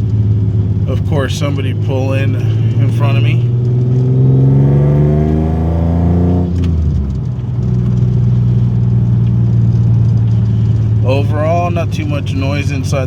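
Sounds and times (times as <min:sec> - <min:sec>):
engine revving from inside cab: 0:00.0 - 0:13.0.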